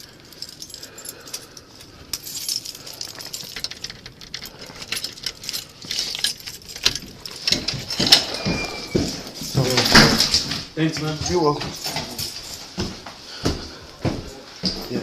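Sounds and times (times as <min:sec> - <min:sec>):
keys jangling: 0:00.0 - 0:12.9.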